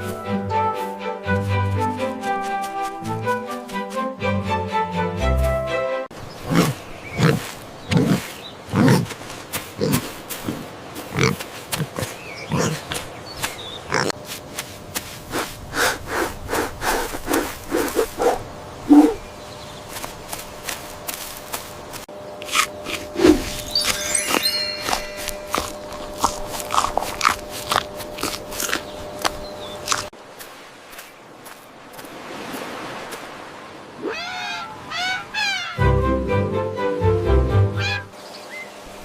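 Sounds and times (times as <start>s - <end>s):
pig grunting: 6.4s - 9.2s, 9.8s - 13.1s, 13.8s - 14.2s.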